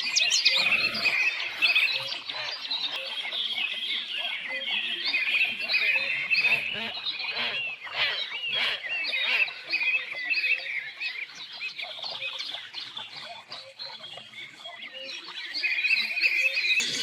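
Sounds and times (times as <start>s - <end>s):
songbirds chirping: 0.0s - 17.0s.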